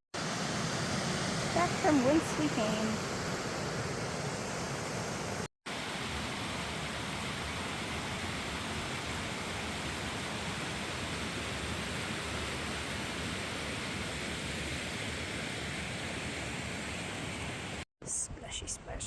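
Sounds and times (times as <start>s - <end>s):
creek water rushing: 0.2s - 17.8s.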